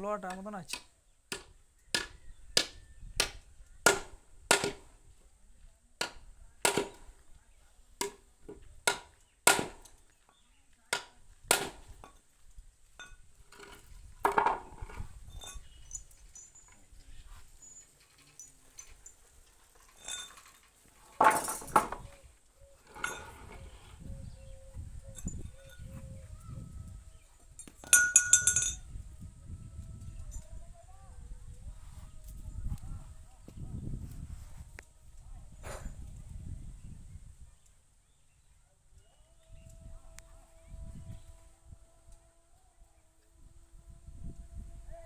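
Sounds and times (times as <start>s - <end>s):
tools knocking and clinking: 17.7s - 22.1s, 22.8s - 23.5s, 27.6s - 28.8s.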